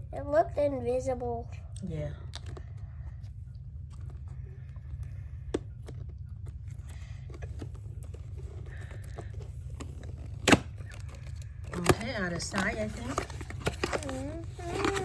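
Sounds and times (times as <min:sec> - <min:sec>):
steady low hum: 0:00.0 - 0:15.0
cardboard box packaging rustling: 0:05.5 - 0:15.0.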